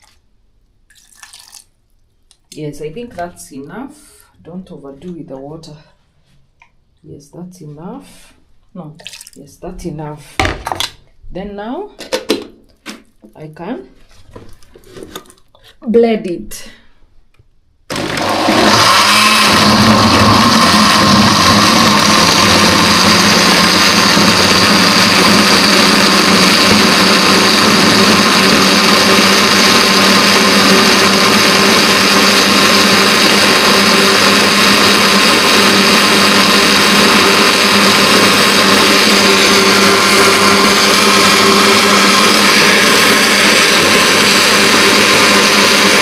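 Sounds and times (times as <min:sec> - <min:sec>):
electric blender running: 0:17.9 - 0:46.0.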